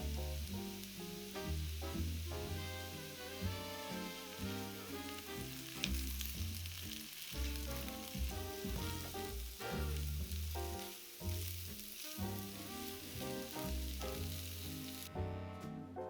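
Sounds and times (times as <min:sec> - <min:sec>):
food sizzling in hot oil: 0:00.0 - 0:15.1
background music: 0:00.0 - 0:16.0.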